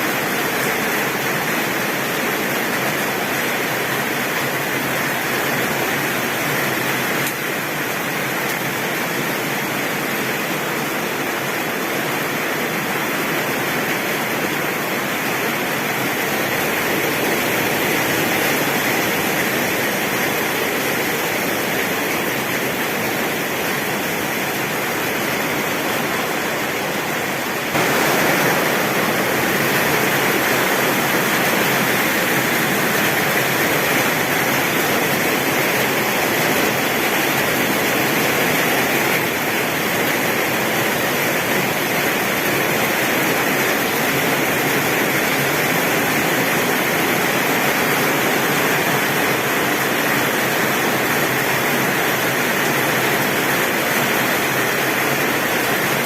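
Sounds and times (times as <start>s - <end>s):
heavy rain on a tin roof: 0.0s - 56.0s.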